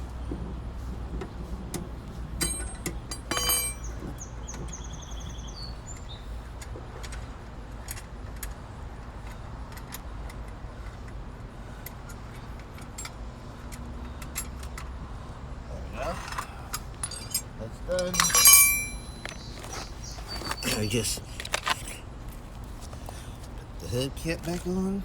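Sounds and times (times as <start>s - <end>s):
sharp metallic clinks: 2.4s - 4.0s, 16.7s - 19.6s, 20.5s - 21.1s
high bird trill: 18.1s - 21.1s.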